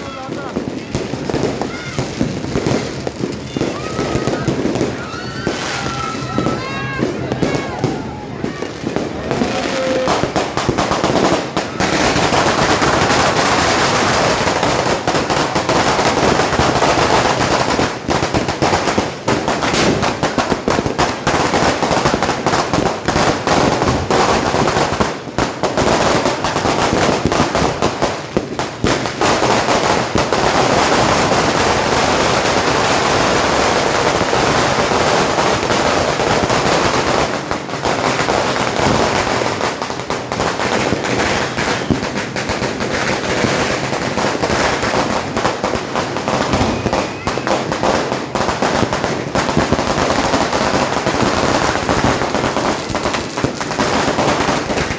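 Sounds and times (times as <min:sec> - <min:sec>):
fireworks crackling and banging: 0:00.0 - 0:54.9.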